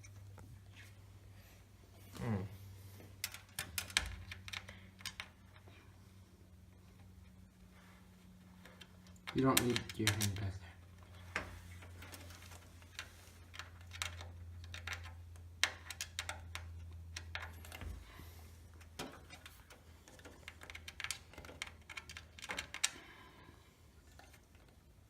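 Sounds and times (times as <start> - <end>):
low steady hum: 0.0 - 25.0
computer hardware clicks and rattles: 3.2 - 5.7, 8.6 - 23.4.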